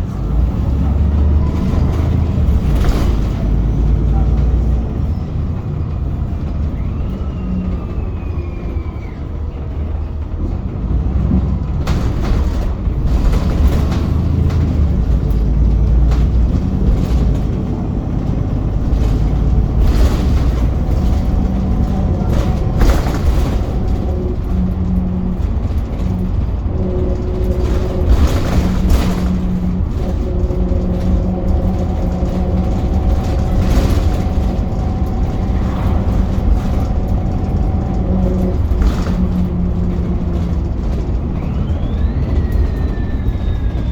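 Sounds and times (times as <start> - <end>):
bus engine and road rumble: 0.0 - 43.9
differential whining: 0.6 - 43.9
knocks and rattles: 9.5 - 43.9.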